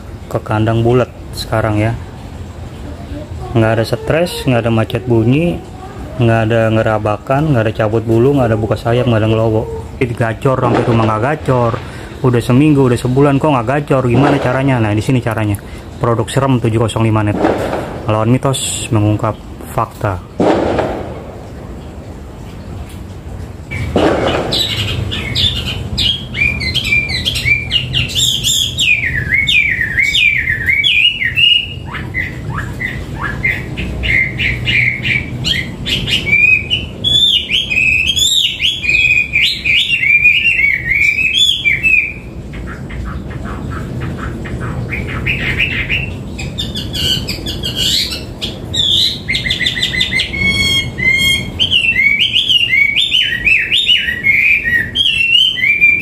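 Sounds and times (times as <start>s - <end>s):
songbird whistling and warbling: 23.7s - 42.8s, 44.8s - 56.0s.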